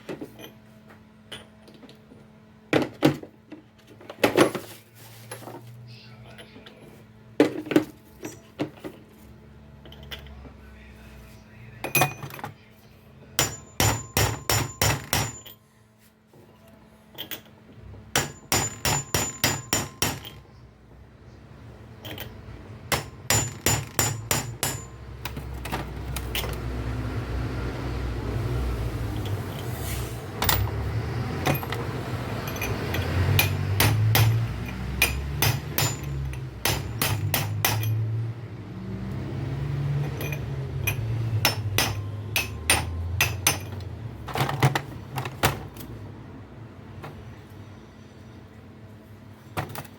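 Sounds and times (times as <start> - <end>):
hammer striking metal: 13.4 - 15.6, 18.1 - 20.4, 22.9 - 25.0, 32.5 - 38.1, 40.1 - 43.8.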